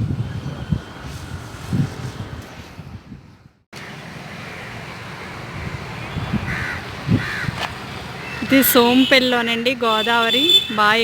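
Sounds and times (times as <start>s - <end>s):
wind on microphone: 0.0s - 3.6s, 5.5s - 7.8s
crow cawing: 6.5s - 7.6s.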